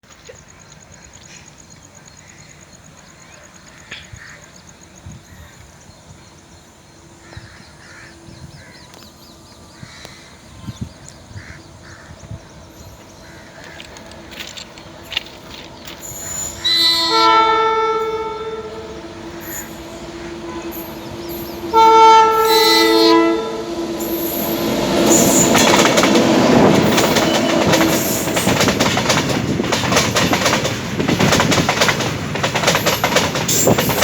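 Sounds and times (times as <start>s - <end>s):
locomotive horn blast: 16.3s - 25.6s.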